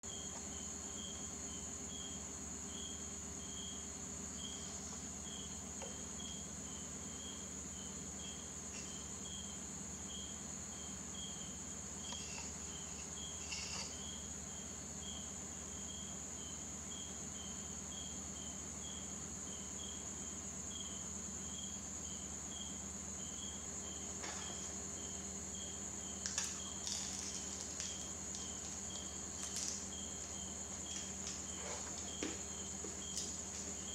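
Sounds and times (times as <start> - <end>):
constant high buzz: 0.0 - 33.9
cricket chirping: 0.0 - 33.9
soft clicks and crackles: 26.2 - 32.1.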